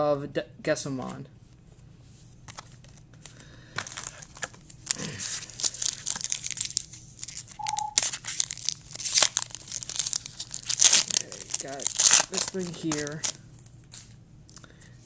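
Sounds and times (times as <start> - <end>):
wrapper tearing and crinkling: 3.8 - 14.2.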